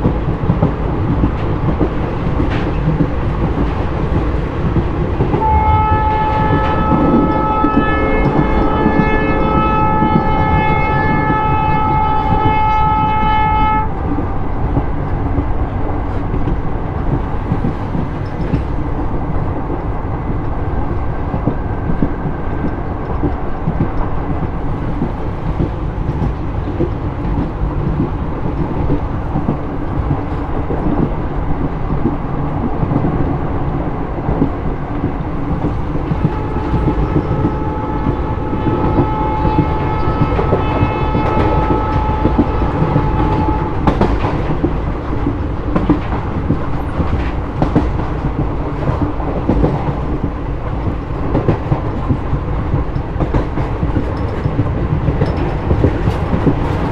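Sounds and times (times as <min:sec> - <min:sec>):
wheels clacking over rail joints: 0:00.0 - 0:13.9, 0:14.6 - 0:56.9
train rumble: 0:00.0 - 0:56.9
locomotive horn blast: 0:05.4 - 0:14.4, 0:35.7 - 0:44.6.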